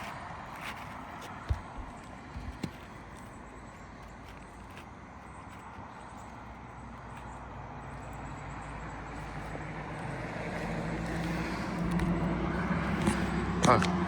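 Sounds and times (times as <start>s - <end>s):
vehicle engine hum: 0.0s - 14.0s.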